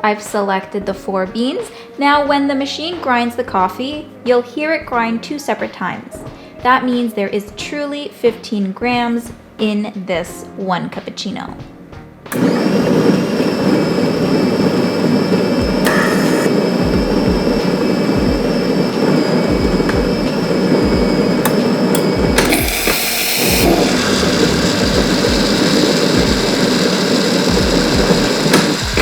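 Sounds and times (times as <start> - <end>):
coffee grinder whirring: 12.3 - 29.0.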